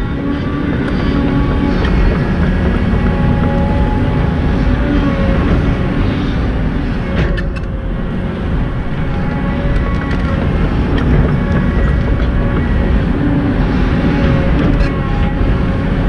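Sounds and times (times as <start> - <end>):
simulated diesel engine rumble: 0.0 - 16.0.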